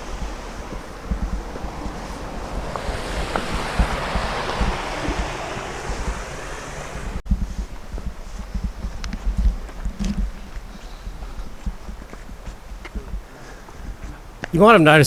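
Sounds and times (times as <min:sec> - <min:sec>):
river water rushing: 0:00.0 - 0:07.2
wind buffeting microphone: 0:00.0 - 0:14.6.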